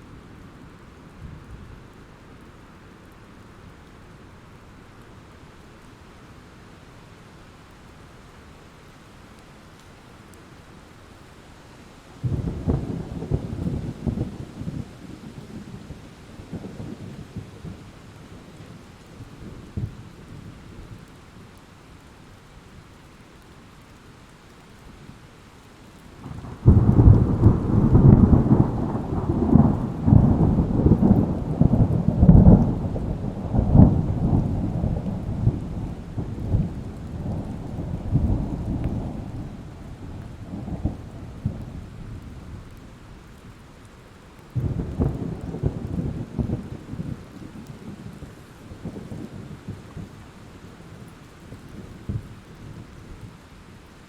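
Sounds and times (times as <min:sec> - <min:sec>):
rain hissing: 0:00.0 - 0:54.0
loud thunderclap: 0:26.2 - 0:39.4
thunder rolling: 0:26.2 - 0:42.6.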